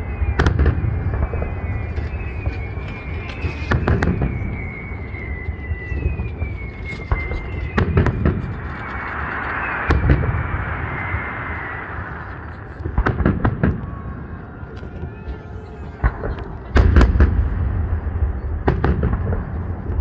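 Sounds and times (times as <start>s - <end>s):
falling firework whistles: 0.0s - 20.0s
sharp firework pops: 0.3s - 11.2s, 12.1s - 13.9s, 16.0s - 17.5s, 18.6s - 20.0s.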